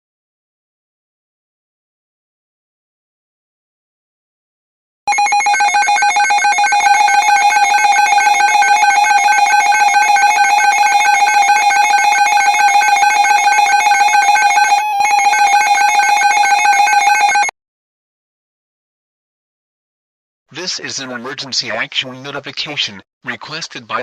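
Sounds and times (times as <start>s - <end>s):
two-tone alarm: 5.1s - 17.5s.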